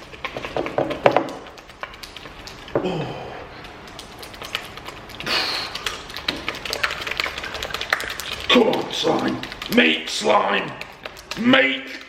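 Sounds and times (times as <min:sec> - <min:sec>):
wet squishing of slime: 0:00.0 - 0:12.0.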